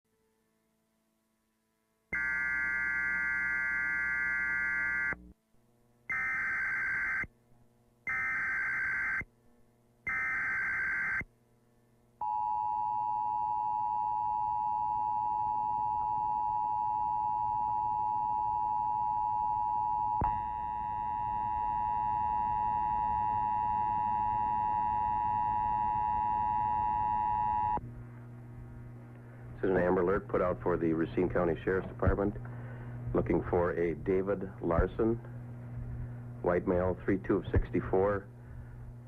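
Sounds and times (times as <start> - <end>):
harsh digital data tones: 2.2 - 5.2, 6.1 - 7.3, 8.1 - 9.2, 10.1 - 11.2
two-tone attention signal: 10.1 - 11.2.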